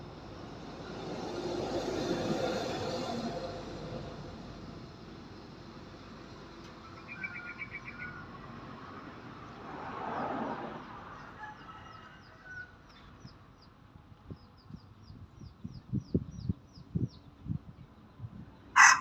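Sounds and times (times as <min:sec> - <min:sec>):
small birds chirping: 0:11.9 - 0:18.3.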